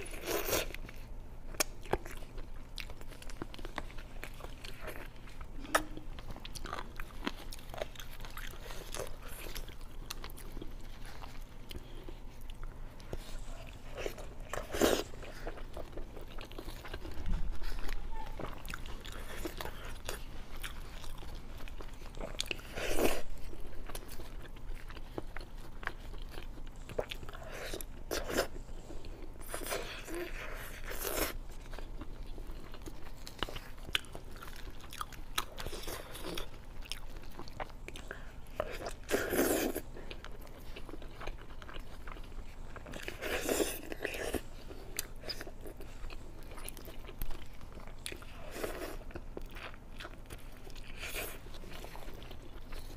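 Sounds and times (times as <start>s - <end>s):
person chewing food: 0.0s - 52.9s.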